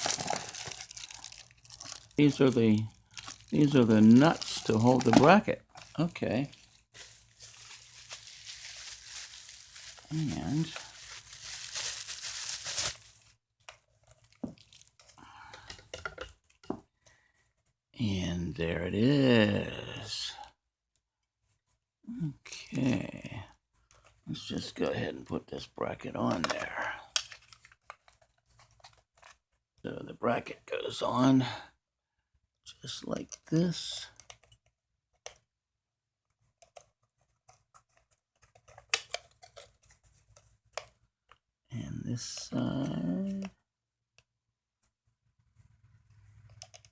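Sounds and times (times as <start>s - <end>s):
packaging crinkling and tearing: 0.0s - 13.3s.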